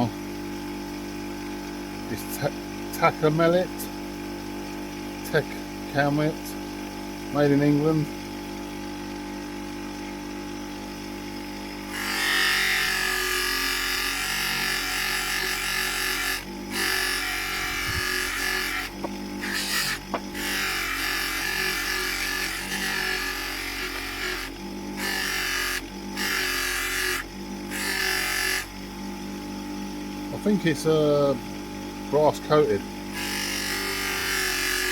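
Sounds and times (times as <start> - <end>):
buffing wheel humming: 15.5 - 29.9.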